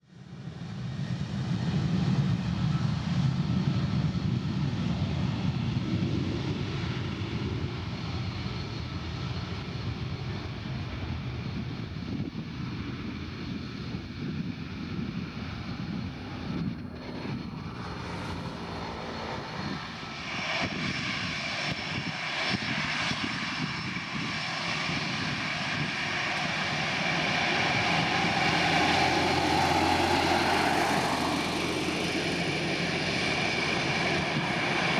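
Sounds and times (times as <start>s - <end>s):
high-pitched engine whine: 0.3s - 34.9s
airplane engine rumble: 0.4s - 34.9s.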